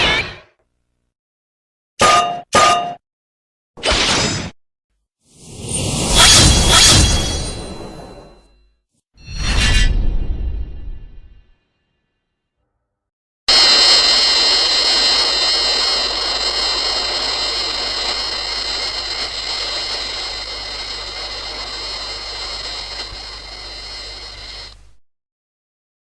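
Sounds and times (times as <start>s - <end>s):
rushing noise: 13.5s - 24.8s
long high whine: 13.5s - 25.0s.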